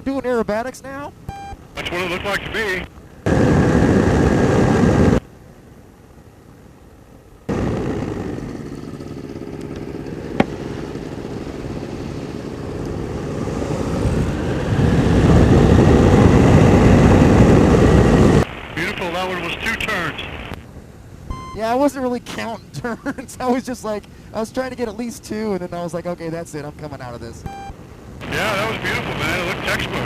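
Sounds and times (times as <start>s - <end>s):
aircraft engine hum: 1.1s - 22.1s, 22.8s - 30.0s
wind rushing: 3.2s - 5.2s, 13.0s - 19.5s.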